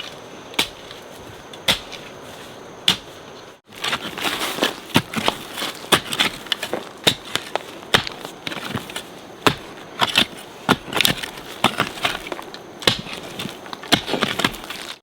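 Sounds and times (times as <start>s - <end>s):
wood crunching and splintering: 3.7s - 15.0s
blade chopping into wood: 4.9s - 14.9s.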